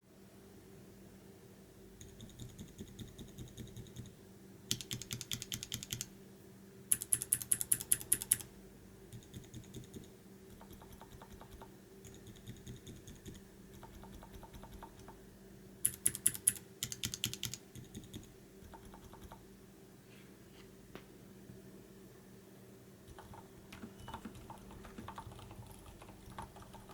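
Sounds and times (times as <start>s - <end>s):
mechanical keyboard keystrokes: 4.7s - 6.1s, 6.9s - 8.5s, 9.2s - 15.2s, 15.9s - 19.4s, 23.1s - 26.9s.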